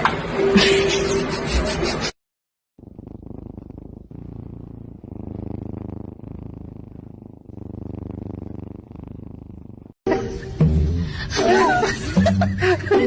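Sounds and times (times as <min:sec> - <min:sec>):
cat purring: 0:02.8 - 0:10.0.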